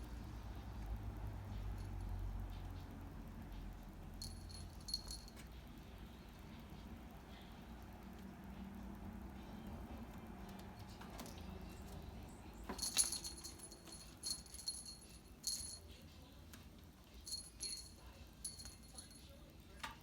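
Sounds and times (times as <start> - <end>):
small bell jingling: 4.2 - 5.6, 12.7 - 16.1, 17.1 - 19.4.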